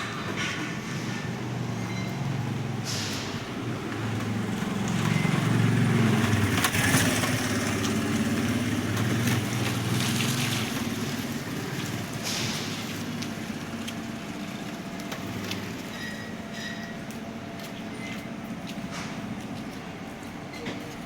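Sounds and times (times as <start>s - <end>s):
concrete mixer running: 3.7s - 12.2s.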